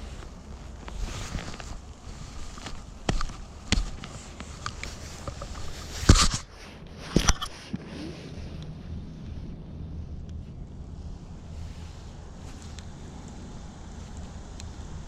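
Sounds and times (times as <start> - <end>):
sharp knocks and clicks: 2.4 - 6.4.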